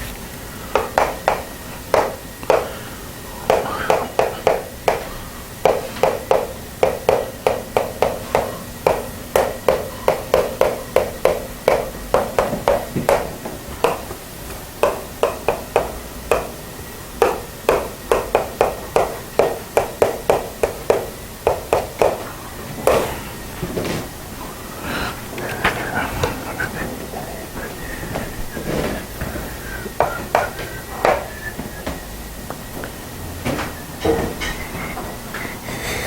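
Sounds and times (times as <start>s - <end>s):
tapping strokes writing on a board: 0.7s - 2.8s, 3.5s - 14.2s, 14.8s - 16.6s, 17.2s - 22.2s, 30.0s - 32.0s.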